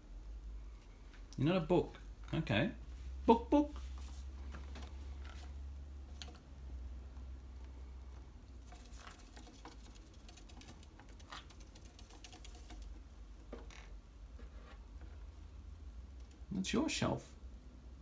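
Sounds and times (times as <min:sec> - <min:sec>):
birds clicking and scratching: 0:03.8 - 0:16.5.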